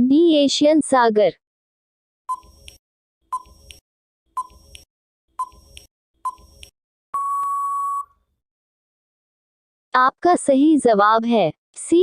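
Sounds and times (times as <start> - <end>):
electronic timer ticks: 2.3 - 3.8, 4.4 - 6.7.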